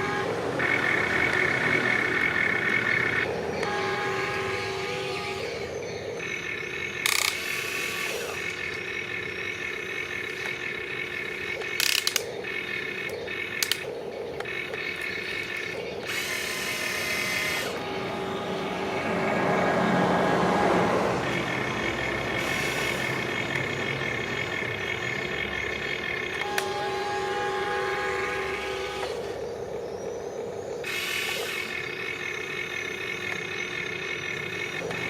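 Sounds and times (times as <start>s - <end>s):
small electric motors whirring: 0.0s - 35.0s
sharp clicks: 6.1s - 17.8s, 22.3s - 26.8s.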